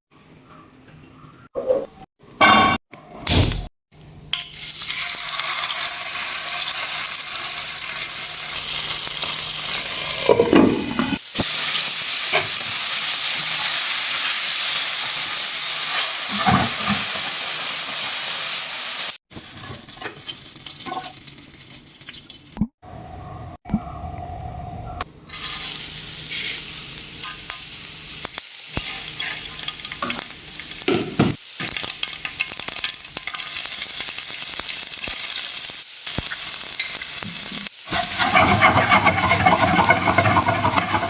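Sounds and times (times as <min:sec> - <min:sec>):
food sizzling in oil: 0:04.4 - 0:22.6, 0:25.3 - 0:41.0
stirring knocks: 0:37.9 - 0:41.0.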